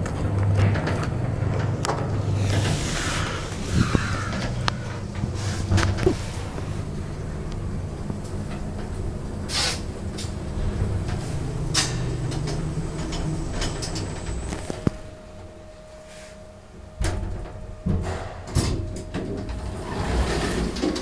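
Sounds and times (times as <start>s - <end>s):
lift humming: 0.0s - 21.0s.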